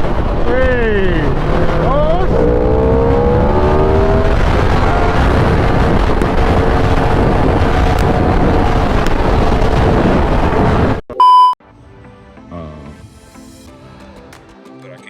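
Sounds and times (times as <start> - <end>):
motorcycle engine and exhaust: 0.0 - 11.0
censor bleep: 11.1 - 11.6.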